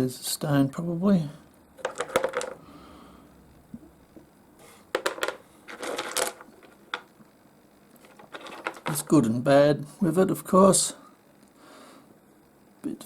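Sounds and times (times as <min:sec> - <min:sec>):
stones clicking and clattering: 0:01.8 - 0:02.6, 0:04.9 - 0:07.1, 0:08.0 - 0:09.1.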